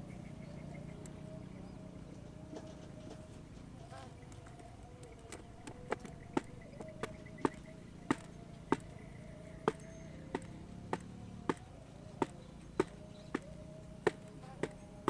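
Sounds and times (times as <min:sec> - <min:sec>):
faint steady hum: 0:00.0 - 0:15.0
sharp uneven knocks: 0:05.6 - 0:09.0, 0:09.7 - 0:14.8.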